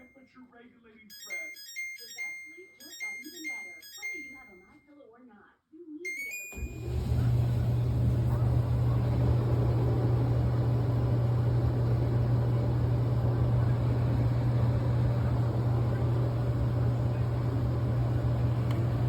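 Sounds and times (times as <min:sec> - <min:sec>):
clothes dryer humming: 0:06.1 - 0:19.0.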